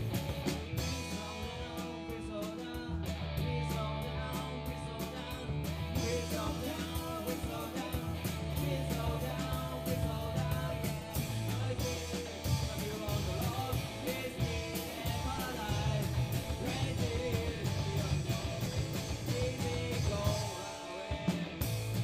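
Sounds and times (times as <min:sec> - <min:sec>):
rock band playing live: 0:00.0 - 0:22.0
person singing: 0:00.8 - 0:21.8.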